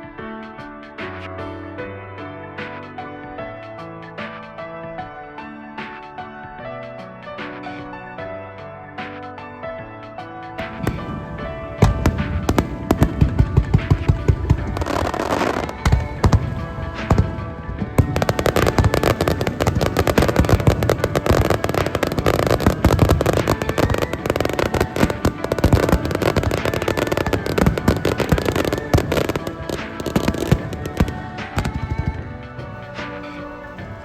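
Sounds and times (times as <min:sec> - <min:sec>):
music playing: 0:00.0 - 0:34.0
fireworks crackling and banging: 0:10.6 - 0:34.0.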